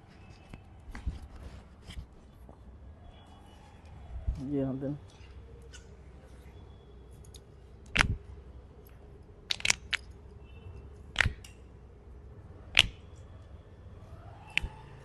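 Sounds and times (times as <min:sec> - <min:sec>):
joints cracking: 0:08.8 - 0:11.7.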